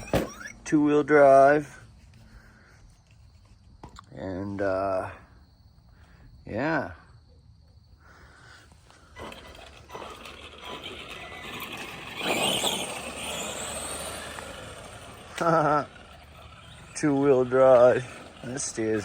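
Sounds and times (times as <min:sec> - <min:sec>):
tyre noise: 0:00.0 - 0:00.7, 0:09.0 - 0:19.0
electric motor and gears whining: 0:08.9 - 0:19.0.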